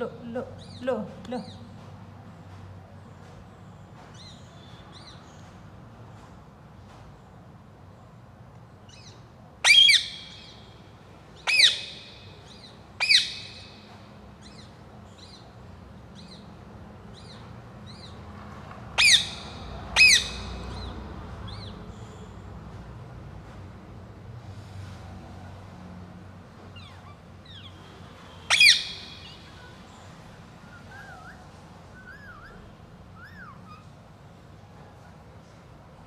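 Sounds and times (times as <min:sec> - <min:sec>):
parrot chirping: 0:08.9 - 0:10.7, 0:11.4 - 0:13.8, 0:19.0 - 0:20.9, 0:26.7 - 0:34.0
parrot squawking: 0:09.6 - 0:10.5, 0:11.4 - 0:12.3, 0:13.0 - 0:13.7, 0:19.0 - 0:20.5, 0:26.8 - 0:27.8, 0:28.4 - 0:29.8, 0:30.6 - 0:34.0.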